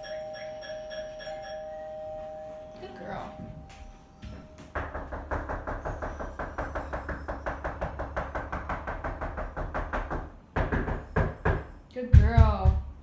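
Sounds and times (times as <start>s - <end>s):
rapid knocking: 4.6s - 13.0s.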